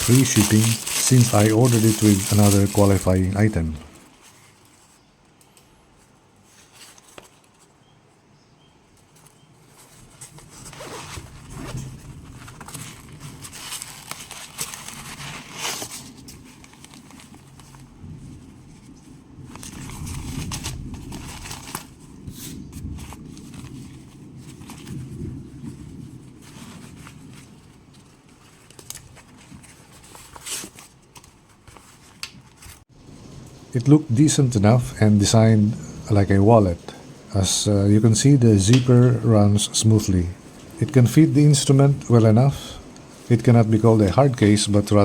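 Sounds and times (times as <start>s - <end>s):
fabric case rustling: 0.0s - 4.8s, 19.5s - 22.0s.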